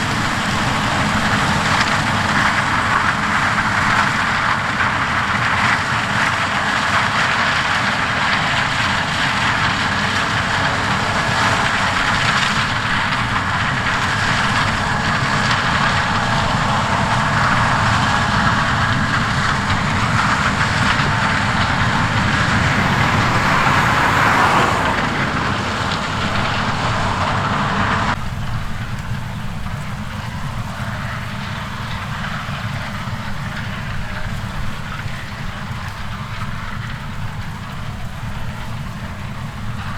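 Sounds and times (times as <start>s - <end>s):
heavy farm machinery running: 0.0s - 28.2s.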